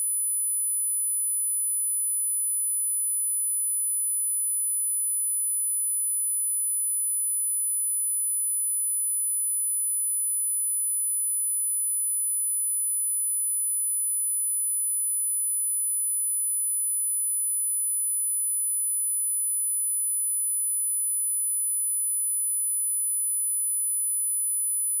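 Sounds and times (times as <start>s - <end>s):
high-pitched sine test tone: 16.7s - 25.0s.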